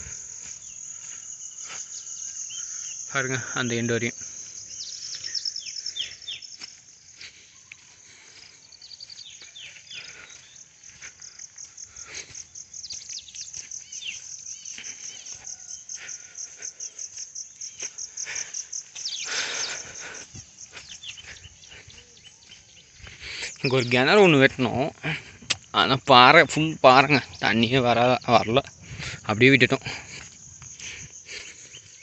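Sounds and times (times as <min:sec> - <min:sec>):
bird chirps: 0:00.0 - 0:06.8, 0:07.4 - 0:10.8, 0:12.4 - 0:15.9, 0:17.4 - 0:24.9
insects trilling: 0:00.0 - 0:32.0.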